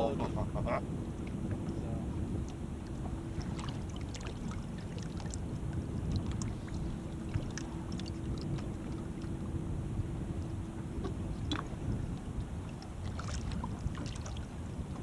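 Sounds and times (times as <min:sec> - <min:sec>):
faint steady hum: 0:00.0 - 0:15.0
water and wind around hull: 0:00.0 - 0:15.0
small splashes: 0:02.5 - 0:05.4, 0:06.1 - 0:09.3, 0:12.7 - 0:14.5.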